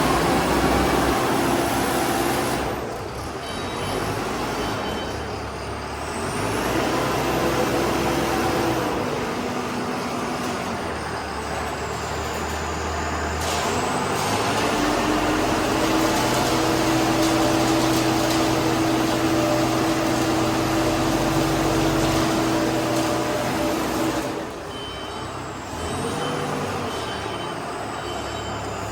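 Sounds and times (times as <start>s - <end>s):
concrete mixer engine running: 0.0s - 28.9s.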